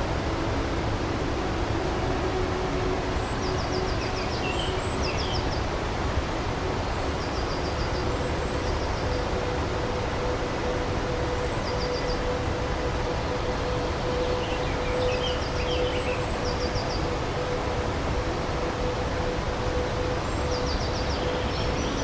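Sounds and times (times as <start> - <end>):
steady rushing hiss: 0.0 - 22.0.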